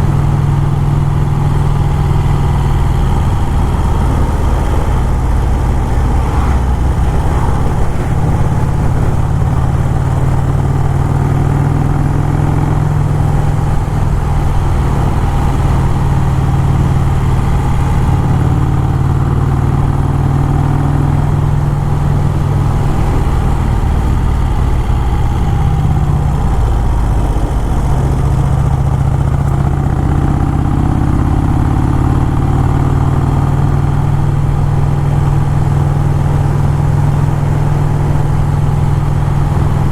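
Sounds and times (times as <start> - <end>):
motorcycle engine droning: 0.0 - 39.9.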